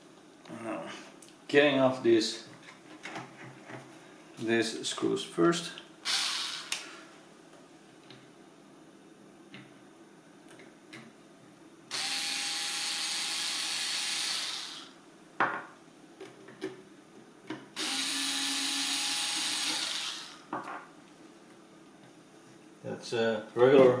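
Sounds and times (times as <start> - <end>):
power screwdriver running: 6.0 - 6.8, 11.9 - 15.0, 17.8 - 20.4.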